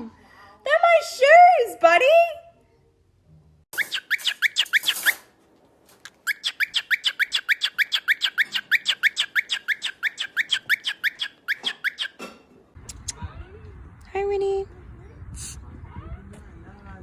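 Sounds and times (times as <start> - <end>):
bird chirping: 3.8 - 5.2, 6.1 - 12.2.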